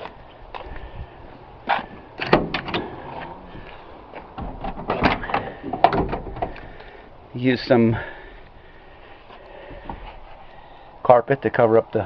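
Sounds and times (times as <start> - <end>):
van door clunking: 1.7 - 3.4, 4.1 - 6.8.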